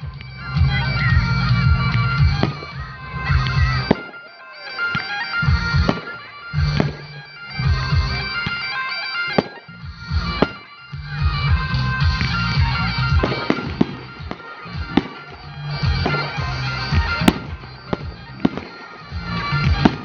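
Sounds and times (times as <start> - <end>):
bagpipe music: 0.0 - 20.0
sharp firework bangs: 3.9 - 4.2, 10.4 - 10.6, 13.2 - 19.0, 19.6 - 20.0.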